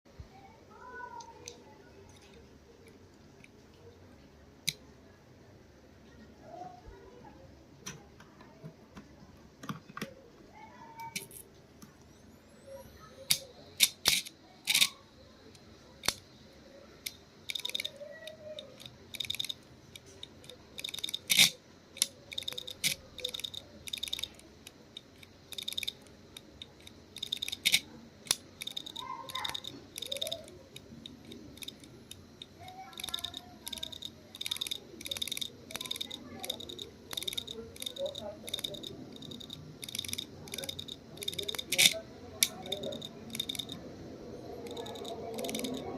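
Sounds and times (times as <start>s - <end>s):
hard disk drive clicking: 17.0s - 43.8s.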